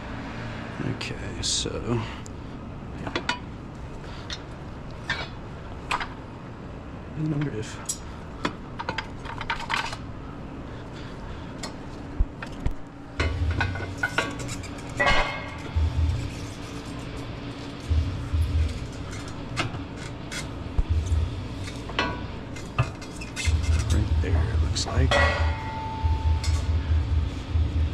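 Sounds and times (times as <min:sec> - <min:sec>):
steady low hum: 0:00.0 - 0:27.9
tools and metal parts clinking: 0:04.2 - 0:06.2, 0:07.4 - 0:08.1, 0:08.8 - 0:10.0, 0:13.2 - 0:26.8.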